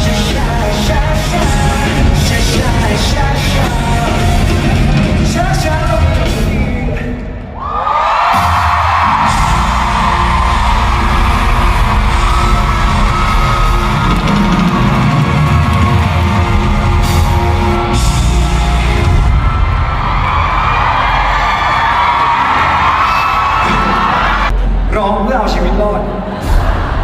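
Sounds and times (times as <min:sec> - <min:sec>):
band playing pop-rock song: 0:00.0 - 0:07.4, 0:08.4 - 0:24.4.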